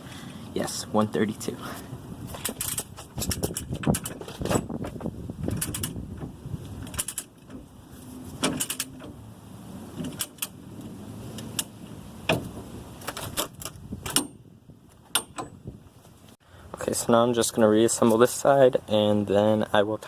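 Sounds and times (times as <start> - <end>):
hand tools and metal parts clinking: 2.3 - 9.2.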